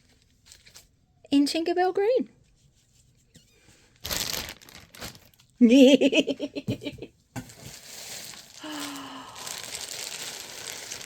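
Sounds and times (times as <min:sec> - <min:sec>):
packaging crinkling and rustling: 0:00.0 - 0:01.0, 0:04.0 - 0:05.6, 0:07.4 - 0:11.0.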